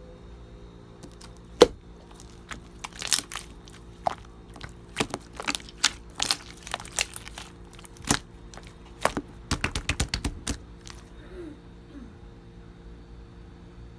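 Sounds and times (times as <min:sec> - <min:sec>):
slime squeezed by hand: 0:01.0 - 0:11.1.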